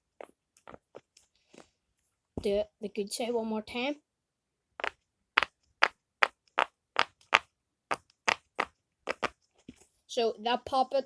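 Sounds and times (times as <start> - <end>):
silicone fidget toy popping: 4.8 - 9.4.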